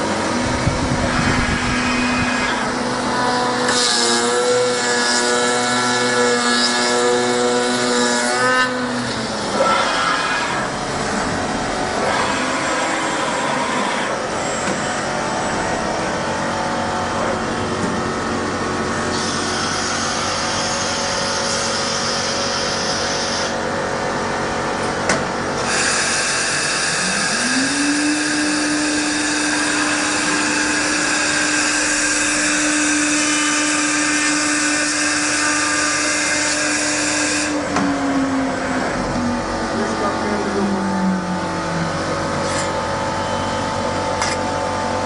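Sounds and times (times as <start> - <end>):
spindle whine rising: 0.0 - 5.4, 8.6 - 23.0, 26.9 - 32.0, 37.0 - 45.0
cnc router humming: 0.0 - 45.0.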